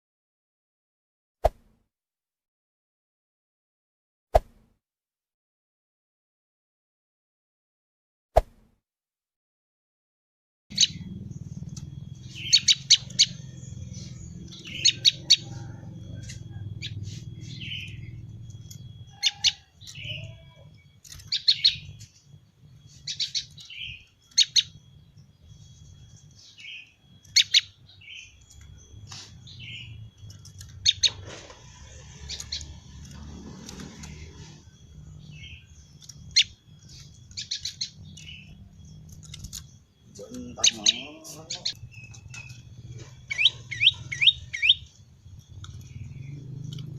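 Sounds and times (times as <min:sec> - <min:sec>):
songbird chirping: 0:10.7 - 0:46.9.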